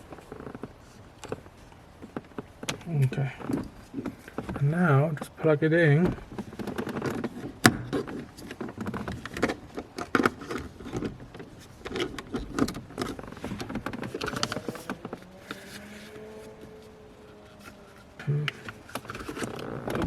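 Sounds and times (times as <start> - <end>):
plastic cable clicks and rubbing: 6.2 - 20.0.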